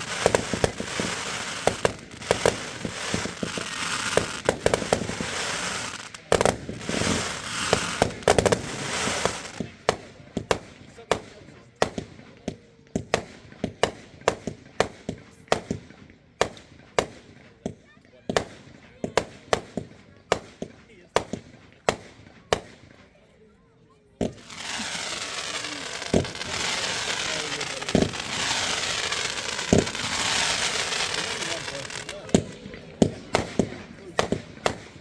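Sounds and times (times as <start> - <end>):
fireworks bangs: 0.0 - 12.2, 24.2 - 35.0
fireworks crackling: 0.0 - 12.4, 24.2 - 35.0.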